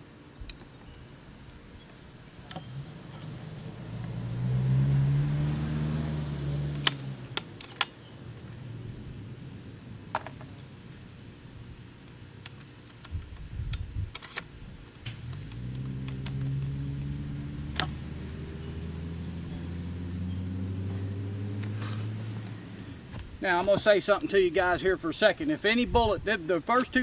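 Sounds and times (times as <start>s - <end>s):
motor humming: 10.8s - 23.4s.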